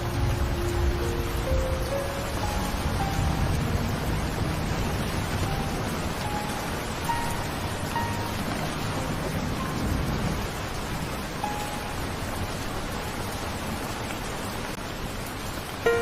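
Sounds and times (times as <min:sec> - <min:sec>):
steady rain: 0:00.0 - 0:16.0.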